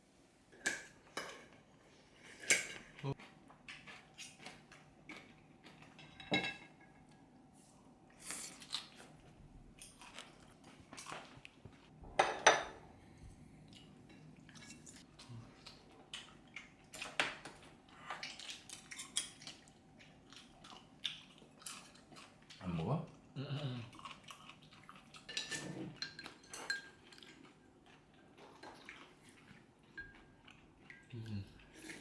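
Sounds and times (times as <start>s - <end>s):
dishes and cutlery clinking: 0.6s - 1.6s, 5.8s - 7.1s, 12.2s - 12.8s, 13.8s - 15.1s, 25.3s - 27.6s.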